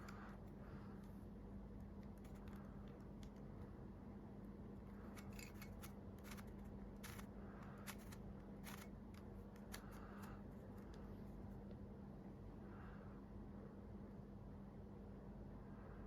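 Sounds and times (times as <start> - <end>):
steady low hum: 0.0 - 16.0
light rustles of packaging: 4.8 - 11.7.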